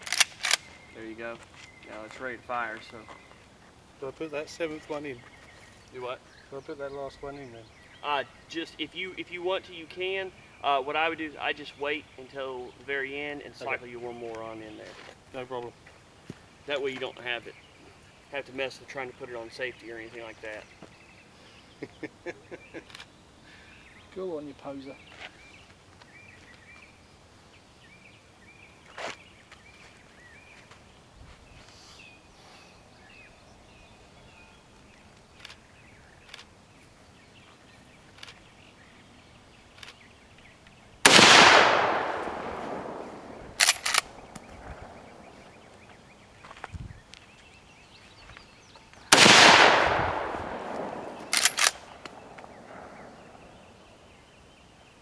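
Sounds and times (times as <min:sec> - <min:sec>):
rifle lever metallic clack: 0:00.0 - 0:00.7, 0:41.1 - 0:44.1, 0:49.1 - 0:52.2
rifle shots: 0:41.0 - 0:45.3, 0:49.1 - 0:53.4.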